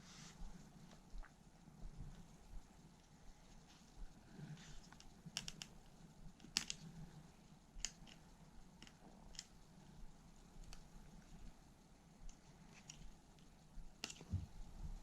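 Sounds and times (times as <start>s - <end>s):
small parts clicking: 4.9s - 5.8s, 6.4s - 7.0s, 7.8s - 9.6s.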